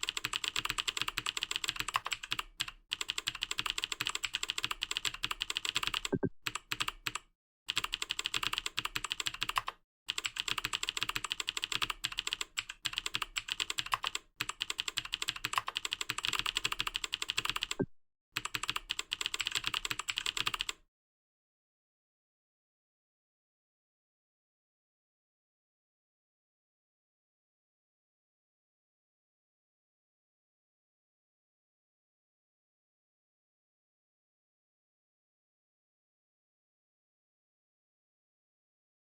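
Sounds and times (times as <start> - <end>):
fast typing on a keyboard: 0.0 - 17.8, 18.4 - 20.8.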